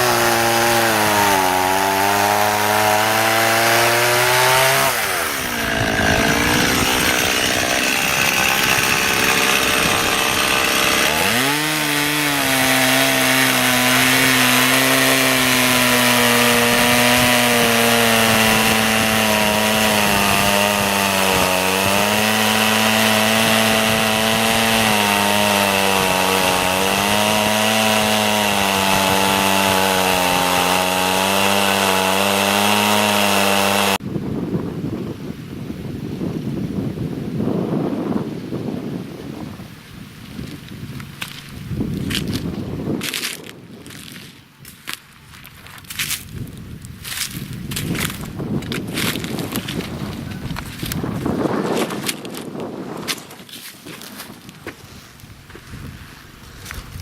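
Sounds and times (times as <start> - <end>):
chainsaw cutting wood: 0.0 - 34.0, 41.2 - 45.0, 45.8 - 46.4, 47.0 - 54.8.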